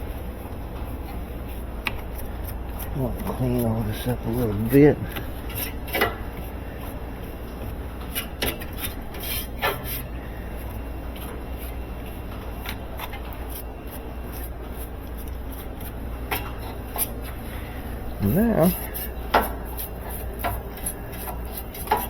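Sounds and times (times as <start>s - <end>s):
steady low hum: 0.0s - 22.0s
rubbing and scraping strokes: 8.1s - 10.1s.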